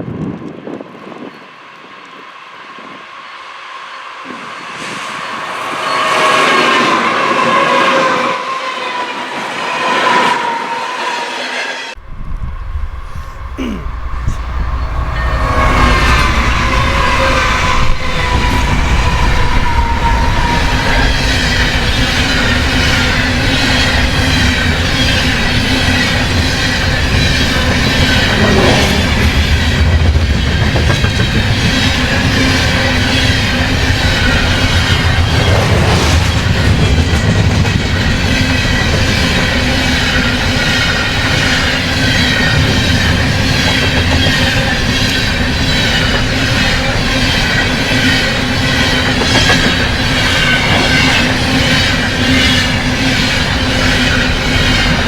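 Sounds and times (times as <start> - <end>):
freight train rumbling: 11.9 - 55.0
high-pitched wheel squeal: 14.2 - 35.6.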